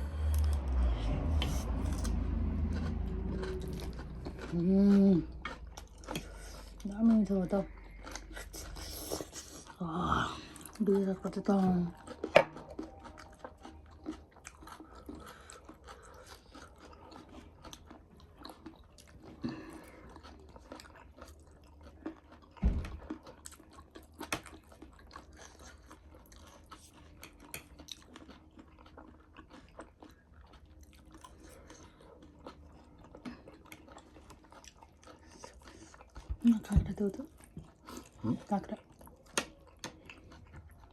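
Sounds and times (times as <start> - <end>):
chewing and crunching snack: 0.0 - 40.9
low thump: 22.6 - 23.0.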